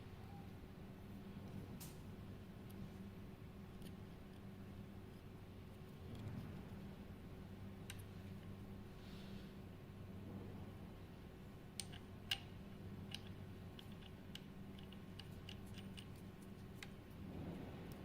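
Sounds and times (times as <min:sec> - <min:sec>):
low steady hum: 0:00.0 - 0:18.0
small metal parts clicking: 0:11.8 - 0:17.0.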